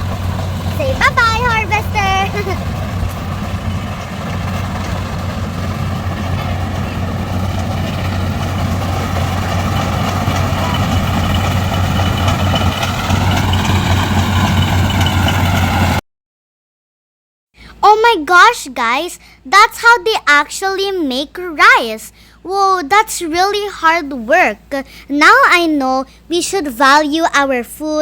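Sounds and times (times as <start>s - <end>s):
harvesting machine engine humming: 0.0s - 16.0s.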